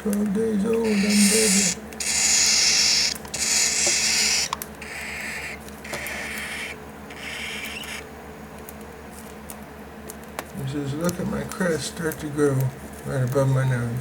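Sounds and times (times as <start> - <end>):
cockatiel chick hissing: 0.8 - 8.1.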